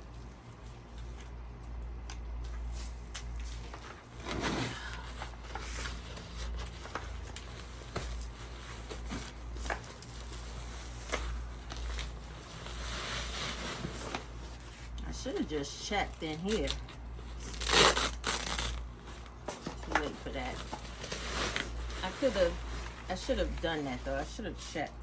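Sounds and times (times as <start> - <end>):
hands rustling dry soil and plants: 20.0 - 24.2.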